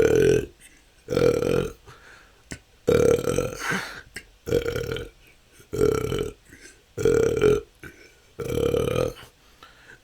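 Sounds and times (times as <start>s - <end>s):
person burping: 0.0s - 0.5s, 1.1s - 1.8s, 2.9s - 5.1s, 5.7s - 6.4s, 7.0s - 9.3s.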